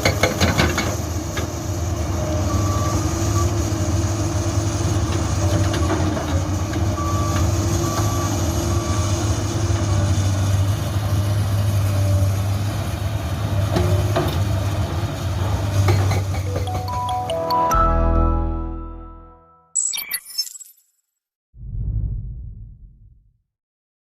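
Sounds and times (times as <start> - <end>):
excavator diesel engine running: 0.0 - 17.3.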